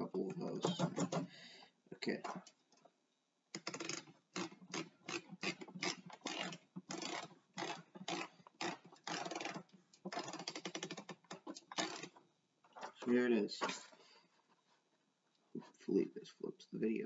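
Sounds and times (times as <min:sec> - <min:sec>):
typewriter ratchet clicks: 0:03.6 - 0:12.1.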